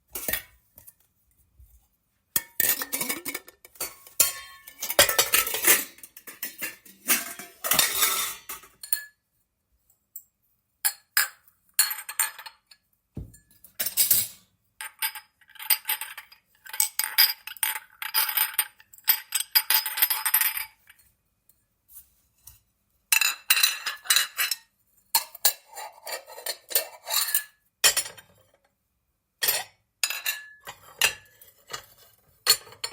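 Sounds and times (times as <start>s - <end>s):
cutlery clinking: 2.4s - 9.2s
dishes knocking together: 13.2s - 13.5s.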